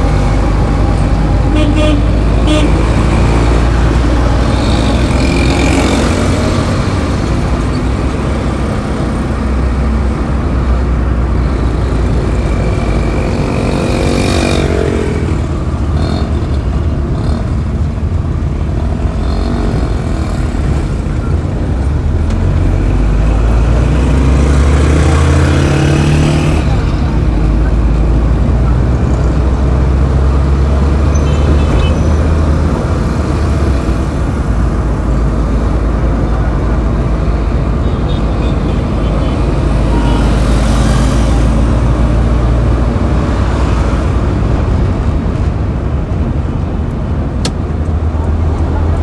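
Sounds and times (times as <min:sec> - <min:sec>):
engine revving: 0:00.0 - 0:45.6
road traffic rumble: 0:00.0 - 0:49.0
car horn toots: 0:01.2 - 0:03.6, 0:31.1 - 0:32.4.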